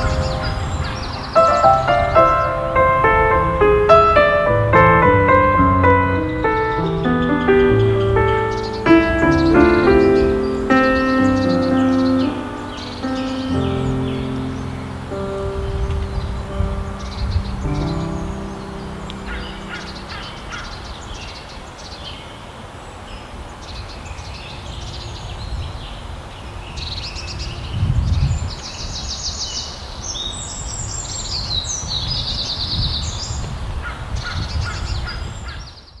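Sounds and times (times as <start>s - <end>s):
birds calling harshly: 0.0s - 4.2s, 5.8s - 22.3s, 32.5s - 35.9s.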